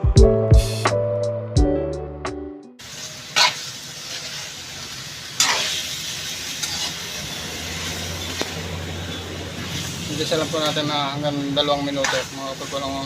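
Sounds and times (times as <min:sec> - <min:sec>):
background music: 0:00.0 - 0:02.8
chicken sizzling in hot oil: 0:02.8 - 0:13.0
spatula scraping pan: 0:03.4 - 0:03.7, 0:05.4 - 0:05.8, 0:06.6 - 0:07.0, 0:12.0 - 0:12.4.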